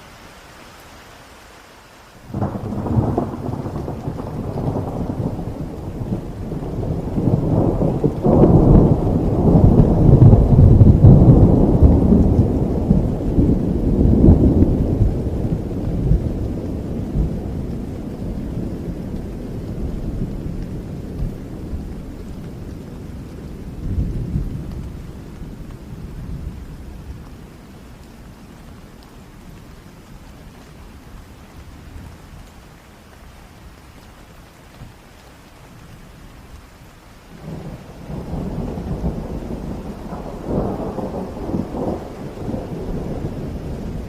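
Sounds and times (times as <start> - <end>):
heavy rain: 0.0 - 44.0
rolling thunder: 2.3 - 27.5, 37.3 - 44.0.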